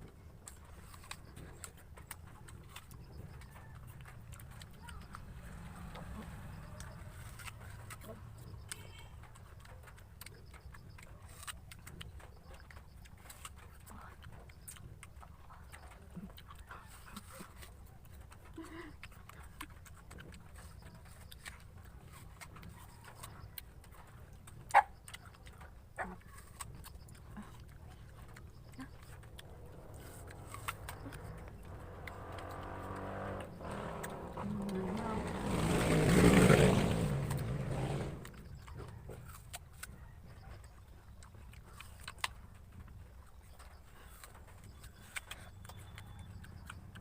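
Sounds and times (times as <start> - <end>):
crunching apple bites and chewing: 0.0 - 47.0
loud rumbling: 29.2 - 38.4.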